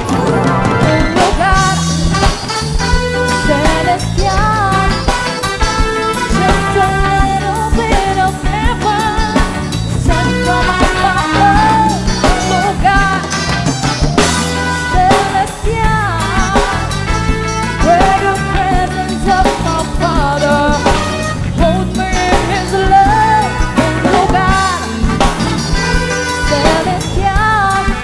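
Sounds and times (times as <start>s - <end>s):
band playing worship song: 0.0s - 28.0s
drum kit: 0.0s - 28.0s
steady bass: 0.0s - 28.0s
wavering melodic lead line: 0.0s - 28.0s.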